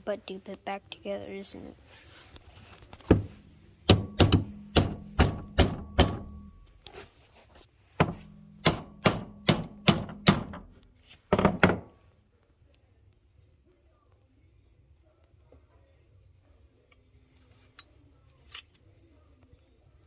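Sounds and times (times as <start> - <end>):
hammer striking steel: 3.8 - 6.7, 8.0 - 10.7.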